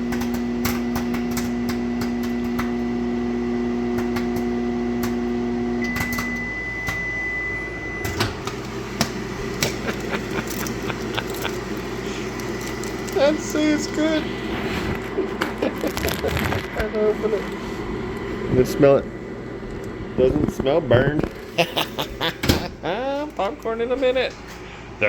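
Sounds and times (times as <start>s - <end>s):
popcorn popping: 0.0s - 7.1s, 8.0s - 17.0s
microwave oven humming: 0.0s - 25.0s
long high beep: 5.8s - 8.1s.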